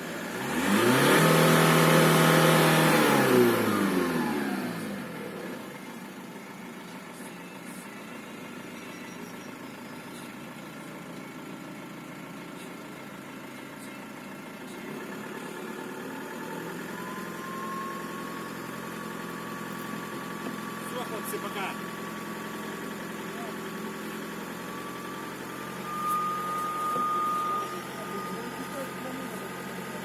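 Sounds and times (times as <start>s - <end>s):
car engine revving and idling: 0.0s - 30.0s
turbo whistle: 16.8s - 18.6s, 24.6s - 29.4s.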